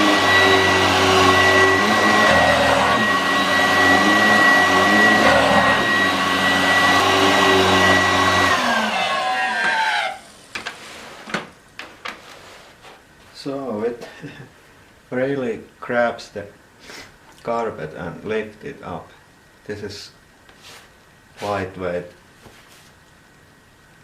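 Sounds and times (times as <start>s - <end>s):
vacuum cleaner running on carpet: 0.0s - 10.0s.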